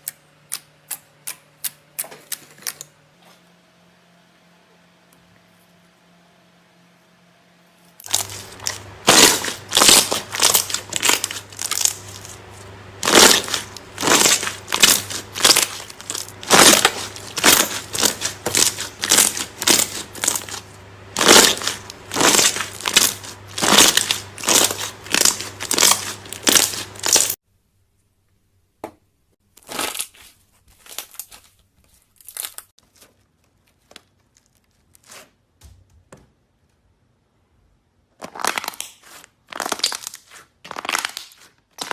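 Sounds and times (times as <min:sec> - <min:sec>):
slime crackling and popping: 0:08.0 - 0:27.4, 0:38.2 - 0:41.9.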